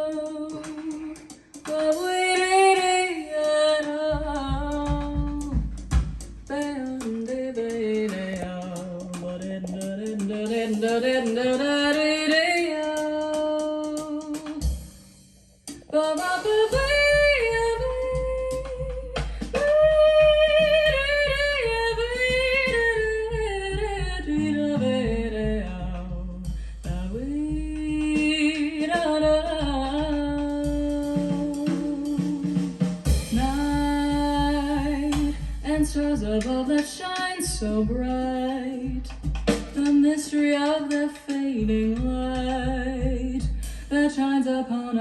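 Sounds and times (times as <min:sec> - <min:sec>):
steady bass beat: 0:16.7 - 0:28.3
wordless singing: 0:24.3 - 0:26.0.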